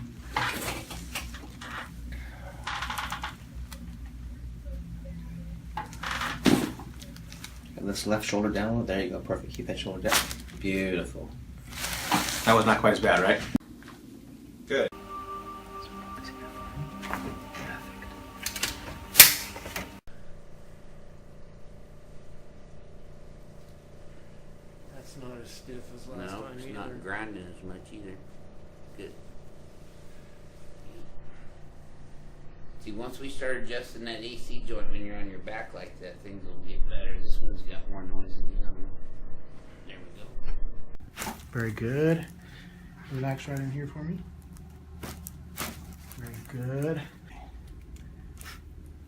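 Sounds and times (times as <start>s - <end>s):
faint room hum: 0.0s - 49.0s.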